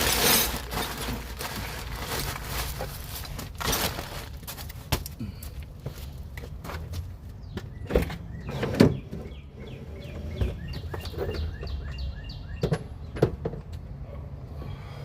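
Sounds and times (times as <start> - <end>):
hand tools scraping and rustling: 0.0 - 7.0.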